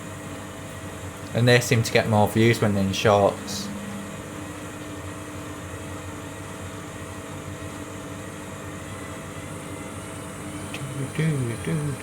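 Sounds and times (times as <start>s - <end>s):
washing machine humming: 0.0s - 12.0s
faint steady tones: 3.0s - 5.2s.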